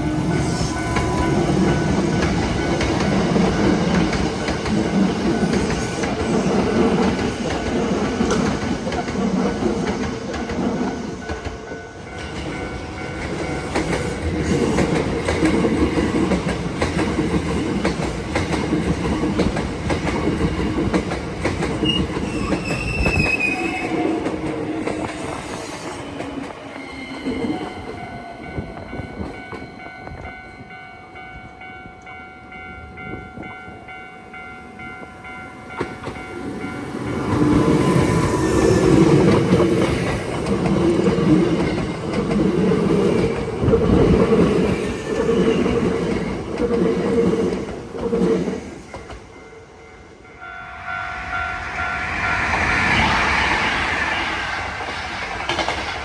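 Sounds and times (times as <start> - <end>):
level-crossing alarm bell ringing: 0.0 - 9.3, 26.8 - 40.2, 49.0 - 53.6
train wheels clattering over rail joints: 54.6 - 56.0.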